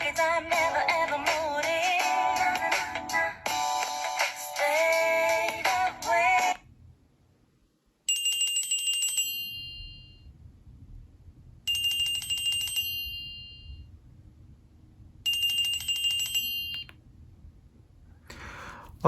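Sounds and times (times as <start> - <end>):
phone ringtone trilling: 8.1 - 10.3, 11.7 - 13.8, 15.3 - 16.9.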